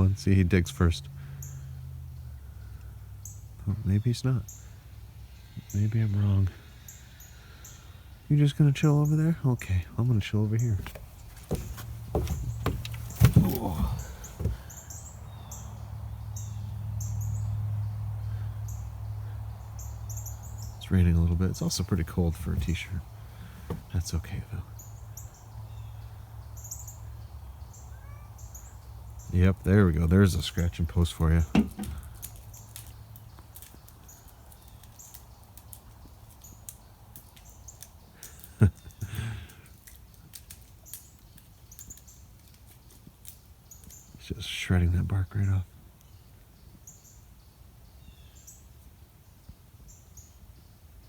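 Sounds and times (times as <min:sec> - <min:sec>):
small birds chirping: 0:00.0 - 0:51.0
cat claws scratching bark: 0:31.1 - 0:44.0.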